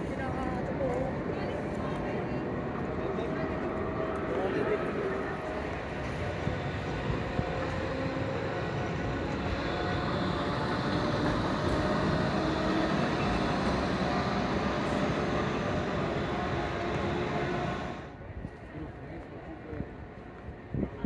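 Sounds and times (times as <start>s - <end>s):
tram rail rumble: 0.0s - 18.4s
tram wheels and motor whining: 2.6s - 18.2s.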